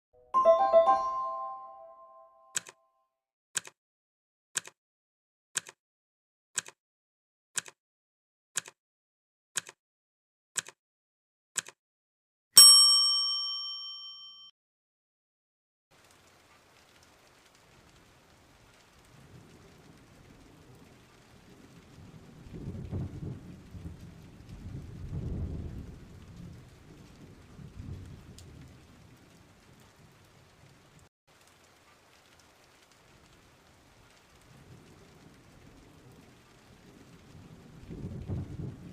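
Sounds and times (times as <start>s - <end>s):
bell ding: 0.3s - 2.5s, 12.6s - 14.5s
clock-like ticks: 2.6s - 2.8s, 3.6s - 3.8s, 4.6s - 4.8s, 5.6s - 5.8s, 6.6s - 6.8s, 7.6s - 7.8s, 8.6s - 8.8s, 9.6s - 9.8s, 10.6s - 10.8s, 11.6s - 11.8s
rain patter: 15.9s - 38.9s.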